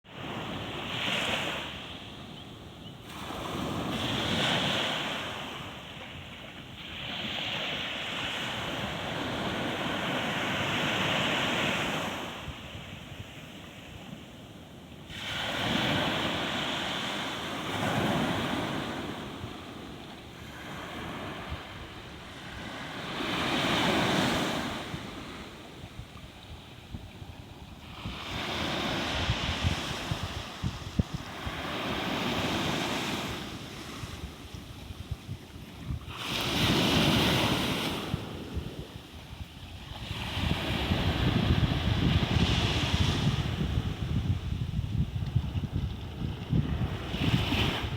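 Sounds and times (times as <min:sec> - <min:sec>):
sea waves breaking on shore: 0:00.1 - 0:02.3, 0:03.0 - 0:47.9
wind buffeting microphone: 0:20.6 - 0:47.9.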